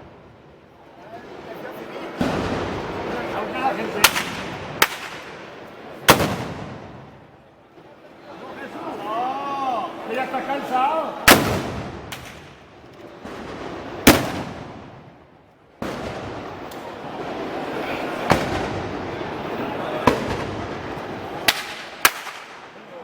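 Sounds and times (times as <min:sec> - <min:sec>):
steady background din: 0:00.0 - 0:23.0
gunshots: 0:02.2 - 0:07.2, 0:11.3 - 0:15.2, 0:15.8 - 0:16.7, 0:17.5 - 0:22.8.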